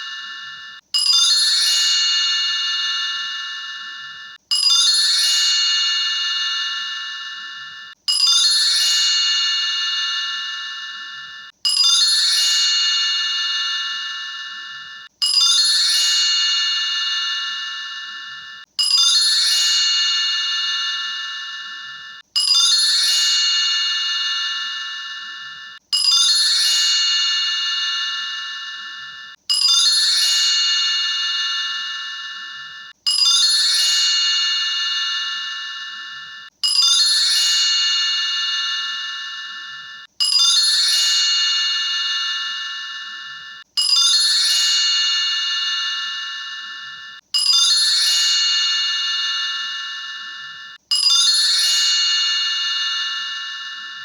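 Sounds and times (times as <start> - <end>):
bell-like chime: 0.0 - 54.0.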